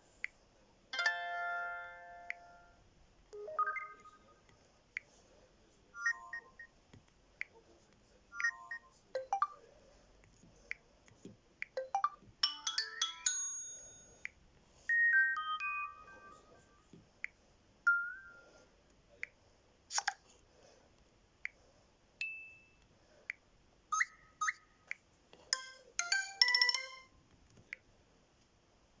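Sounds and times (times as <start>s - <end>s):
phone notification tones: 3.4s - 4.3s, 14.9s - 16.7s, 25.6s - 27.1s.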